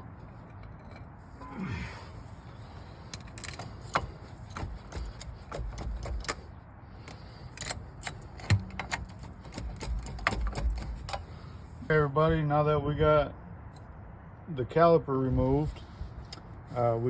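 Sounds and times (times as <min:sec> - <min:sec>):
brake caliper creaking: 0:00.0 - 0:11.6
metallic clicks and knocks: 0:03.0 - 0:11.3.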